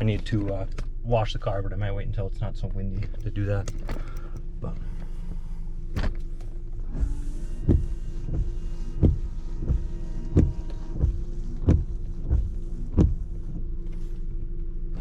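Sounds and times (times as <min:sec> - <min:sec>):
car engine running: 0:03.2 - 0:04.6.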